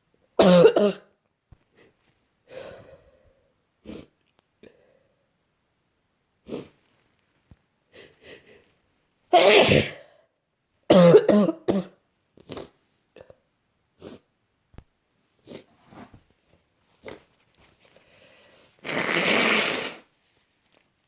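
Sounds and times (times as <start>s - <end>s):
person coughing: 0.4s - 1.1s, 9.4s - 10.1s, 10.9s - 12.0s.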